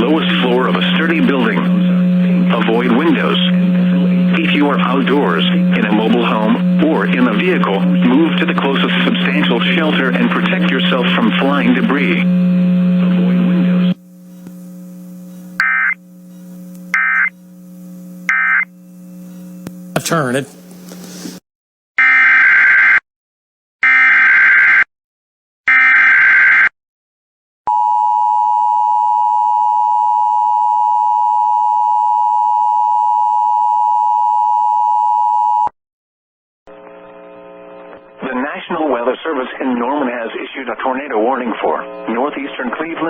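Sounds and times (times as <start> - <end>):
warbling data bursts: 16.9 - 17.4
person speaking: 19.9 - 21.4.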